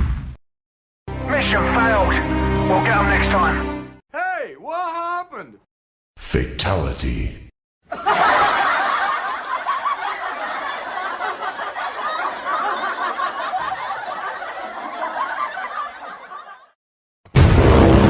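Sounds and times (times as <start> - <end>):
people laughing: 7.9 - 16.8.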